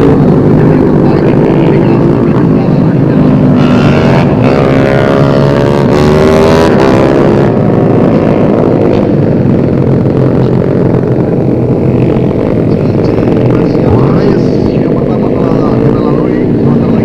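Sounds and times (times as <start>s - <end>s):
racing motorcycle engines: 0.0s - 17.0s.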